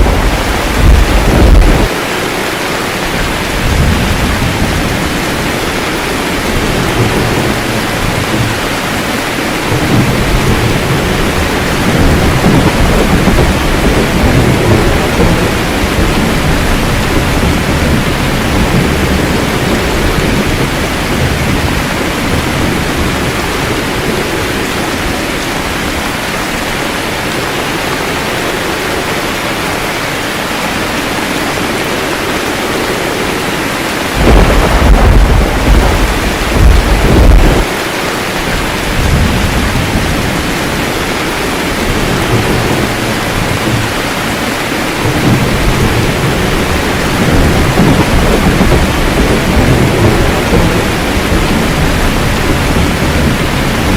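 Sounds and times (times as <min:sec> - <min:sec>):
rolling thunder: 0:00.0 - 0:02.4, 0:03.0 - 0:26.1, 0:31.6 - 0:53.9
steady rain: 0:00.0 - 0:53.9.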